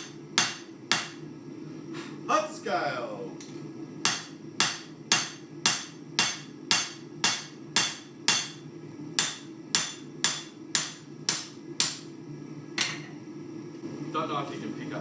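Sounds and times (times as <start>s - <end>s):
hammer striking steel on anvil: 0.0s - 1.2s, 4.0s - 12.1s.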